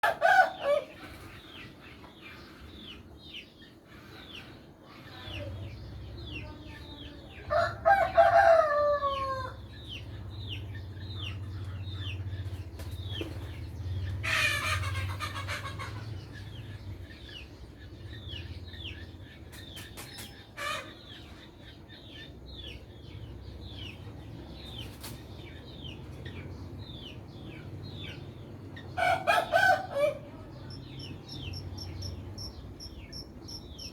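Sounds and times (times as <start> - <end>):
roosters crowing: 7.5 - 9.7, 28.9 - 33.9.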